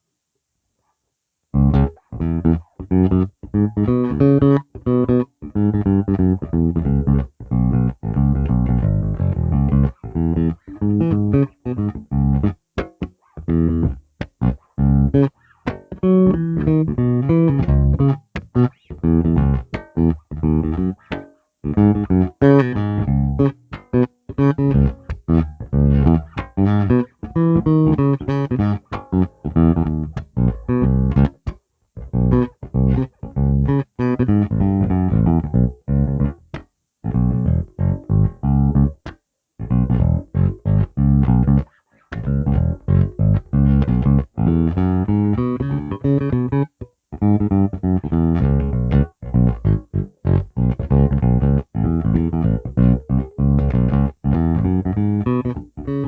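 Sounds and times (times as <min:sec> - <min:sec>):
electric bass riff: 0:01.5 - 0:56.0.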